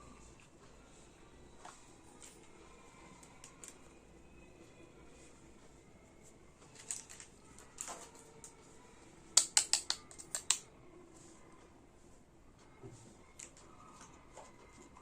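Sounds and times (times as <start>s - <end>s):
plastic toy pieces clicking: 6.7s - 8.3s, 9.4s - 10.7s.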